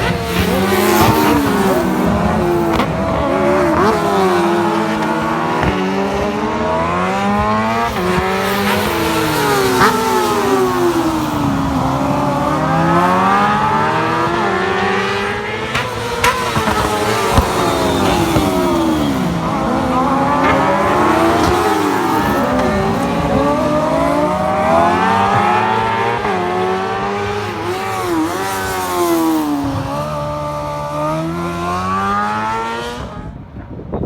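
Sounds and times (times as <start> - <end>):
racing engines passing at speed: 0.0 - 33.7.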